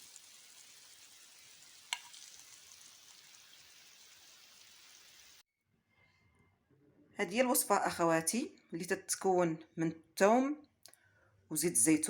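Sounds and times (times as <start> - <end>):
garlic sizzling in oil: 0.0 - 5.4.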